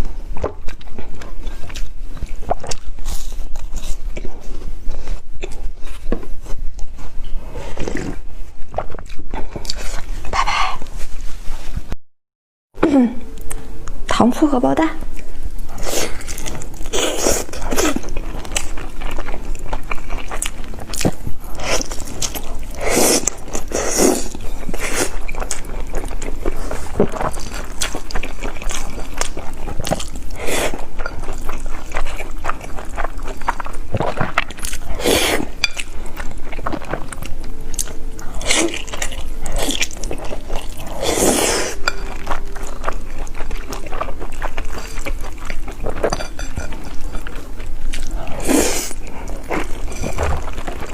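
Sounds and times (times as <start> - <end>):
close-miked biting and chewing: 15.6 - 50.9.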